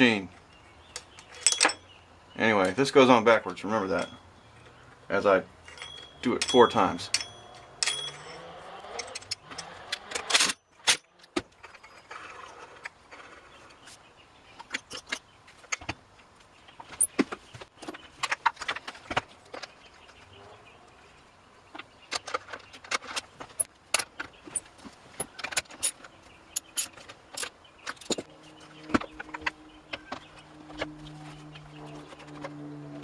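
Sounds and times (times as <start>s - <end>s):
metal tools clinking: 1.2s - 1.9s, 3.7s - 4.8s, 5.6s - 13.4s, 22.1s - 32.5s.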